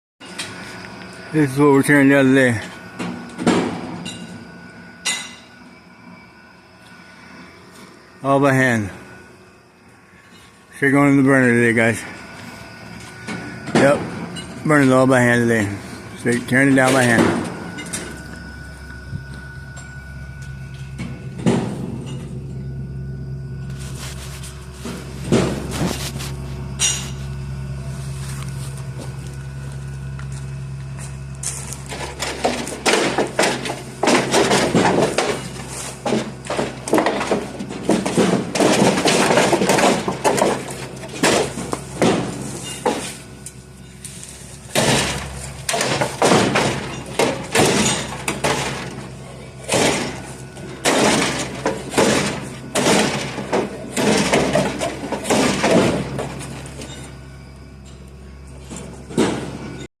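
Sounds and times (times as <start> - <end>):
steady low hum: 0.2 - 59.9
material crashing and breaking: 31.6 - 43.3, 44.5 - 57.2
knocks and cracks: 31.8 - 43.0, 44.7 - 49.1, 49.7 - 56.9.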